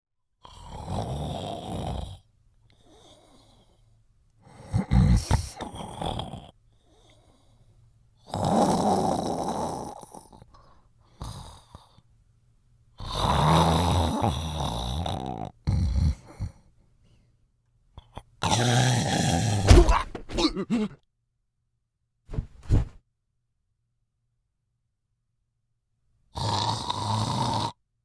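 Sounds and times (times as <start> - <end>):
loud snoring: 0.4 - 3.7, 4.4 - 7.4, 8.2 - 10.5, 11.2 - 12.0, 13.0 - 16.6, 18.0 - 19.8, 26.3 - 27.8.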